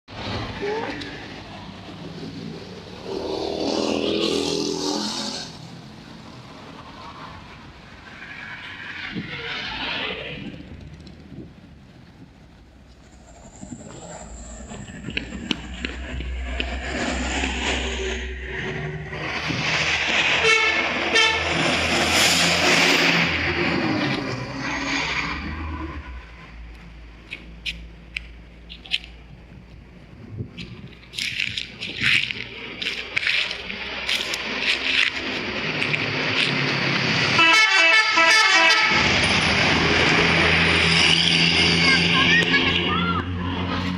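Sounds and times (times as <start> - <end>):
bus passing by: 0.1 - 43.9
multi-tone bus horn: 20.3 - 21.8, 37.3 - 39.2.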